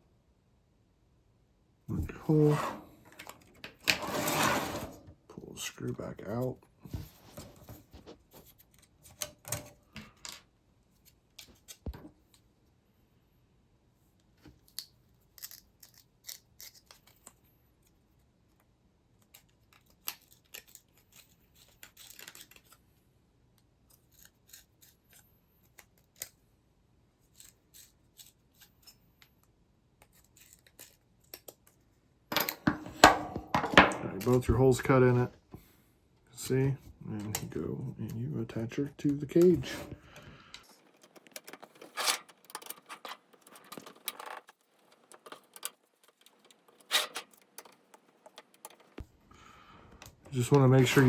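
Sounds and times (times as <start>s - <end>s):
reamer clicking and scraping plastic: 39.1s - 49.0s.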